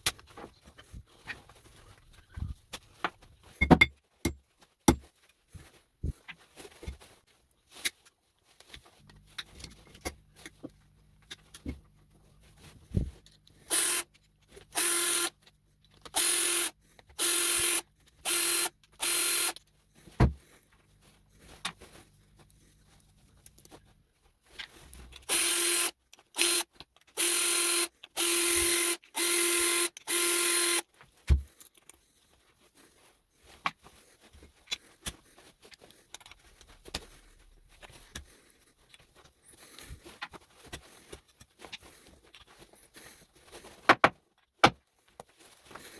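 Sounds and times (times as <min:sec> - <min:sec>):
small electric tool motor bursts: 0:13.7 - 0:14.1, 0:14.7 - 0:15.4, 0:16.1 - 0:19.6, 0:25.2 - 0:30.9.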